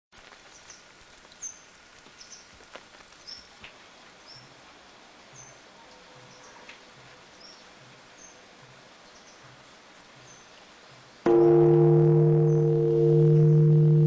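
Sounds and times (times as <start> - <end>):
steady background hiss: 0.2 - 14.0
small birds chirping: 0.4 - 11.2.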